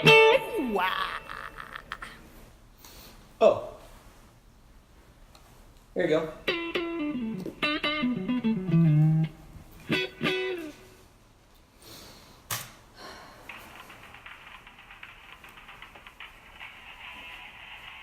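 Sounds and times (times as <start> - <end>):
electric guitar notes and chords: 0.0 - 0.8, 6.5 - 10.8.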